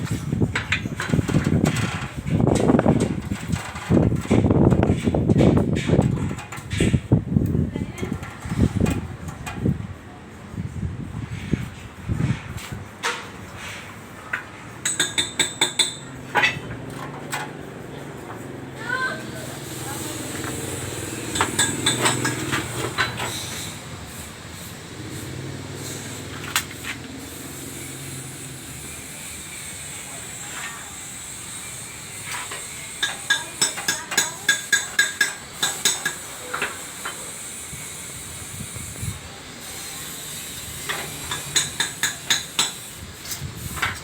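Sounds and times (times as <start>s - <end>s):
rapid metallic strikes: 14.8s - 28.5s
steady hiss: 18.8s - 44.0s.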